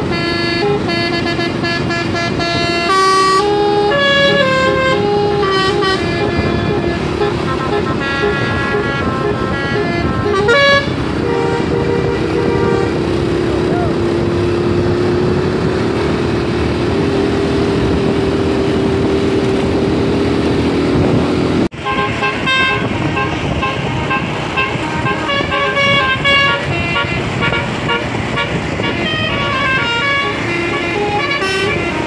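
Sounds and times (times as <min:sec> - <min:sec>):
bus musical horn: 0:00.0 - 0:13.9, 0:21.7 - 0:32.0
road and engine noise: 0:00.0 - 0:32.0.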